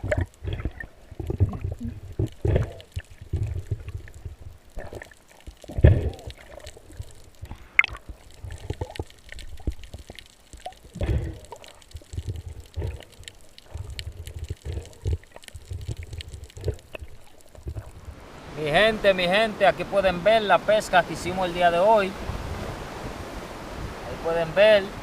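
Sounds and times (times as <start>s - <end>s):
water sloshing and gurgling: 0.0s - 25.0s.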